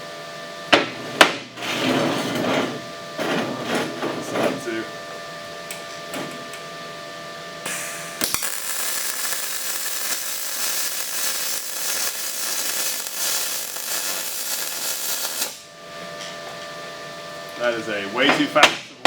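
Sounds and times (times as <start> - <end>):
welding arc crackling: 7.7 - 15.7.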